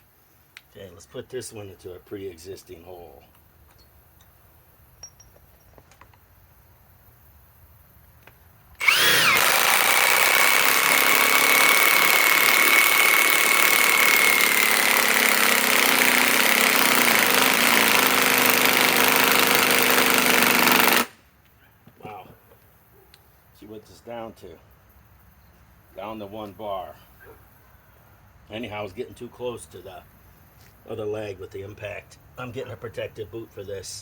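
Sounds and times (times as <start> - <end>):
impact wrench driving fastener: 8.8 - 21.2.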